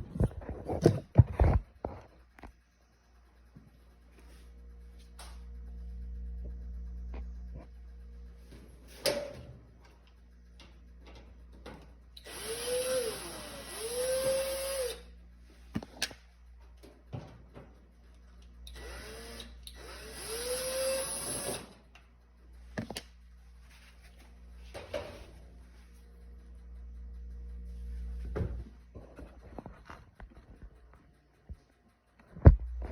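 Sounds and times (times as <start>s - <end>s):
power drill bursts: 12.2s - 15.0s, 18.7s - 21.7s.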